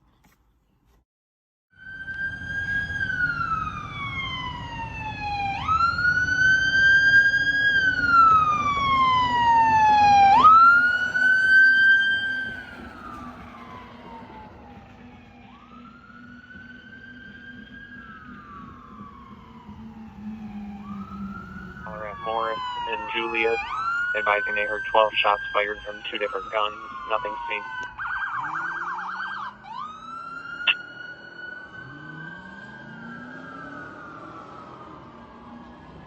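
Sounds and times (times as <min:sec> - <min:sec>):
fire engine siren wailing: 0:01.7 - 0:36.0
road noise: 0:01.8 - 0:36.0
truck engine rumble: 0:09.4 - 0:30.0.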